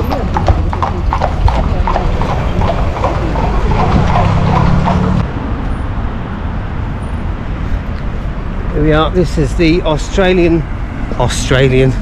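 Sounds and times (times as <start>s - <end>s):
horse hooves clopping on street: 0.0s - 5.3s
traffic engine hum: 0.0s - 12.0s.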